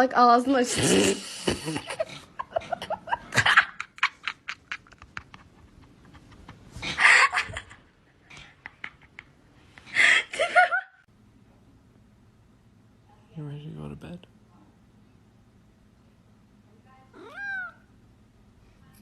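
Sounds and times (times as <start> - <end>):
person laughing: 1.4 - 9.3.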